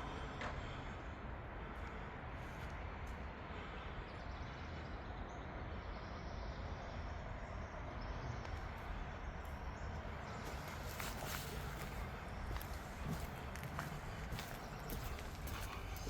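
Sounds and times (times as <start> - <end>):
low outdoor rumble: 0.0 - 16.0.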